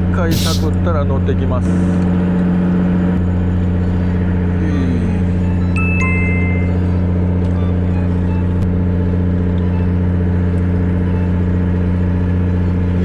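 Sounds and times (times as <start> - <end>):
boat engine idling: 3.3 - 13.0.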